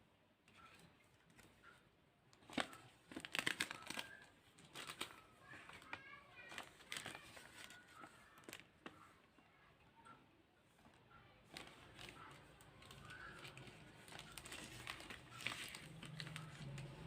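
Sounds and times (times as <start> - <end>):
packaging crinkling and rustling: 2.4 - 9.0, 11.5 - 17.0.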